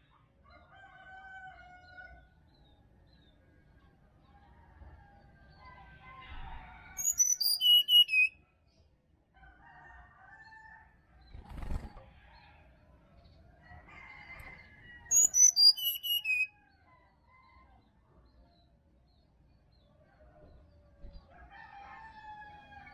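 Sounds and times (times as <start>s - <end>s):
bird singing high whistled notes: 7.0s - 8.4s, 15.1s - 16.5s.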